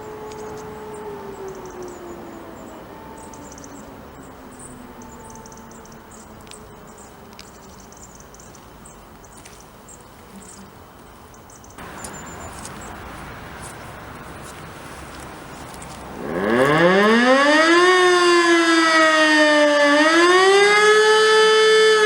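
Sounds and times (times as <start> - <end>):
distant siren winding down: 0.0 - 7.4, 15.1 - 22.0
high bird chirps: 11.3 - 14.0
steady rushing noise: 11.8 - 17.1.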